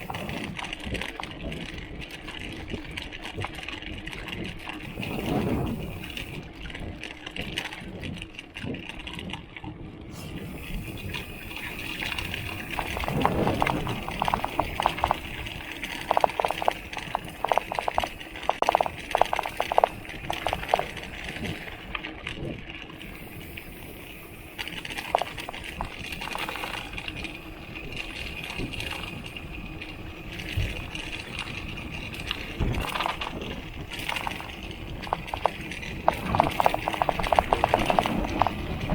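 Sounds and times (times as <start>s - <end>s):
tyre and trail noise: 0.0s - 38.9s
water bottle rattling: 11.9s - 21.6s, 24.9s - 27.2s, 32.1s - 38.9s.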